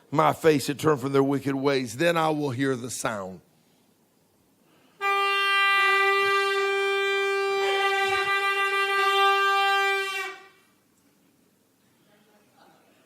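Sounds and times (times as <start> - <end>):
long horn note: 5.0 - 10.6.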